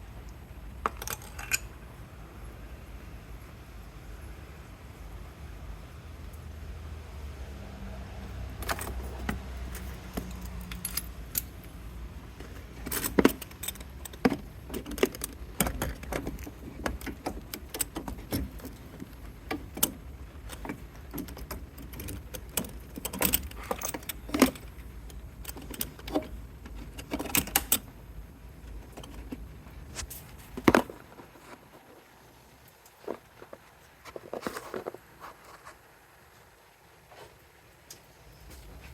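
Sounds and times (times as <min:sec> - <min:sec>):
low steady rumble: 0:00.0 - 0:31.4
small metal objects jingling: 0:08.6 - 0:11.7.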